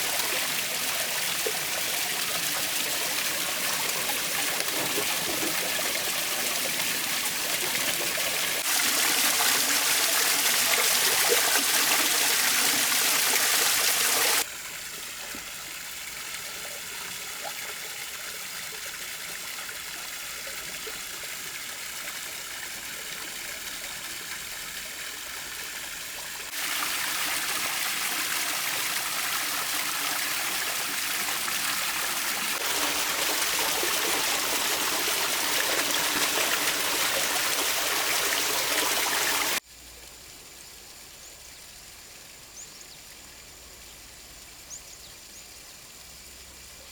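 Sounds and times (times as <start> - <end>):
water splashing down waterfall: 0.0 - 14.5, 26.5 - 39.6.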